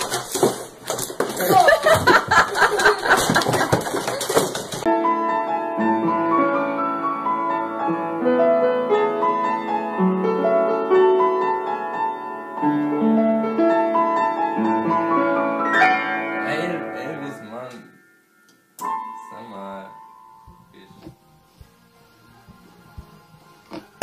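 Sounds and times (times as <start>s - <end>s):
solo piano music: 4.8s - 23.4s.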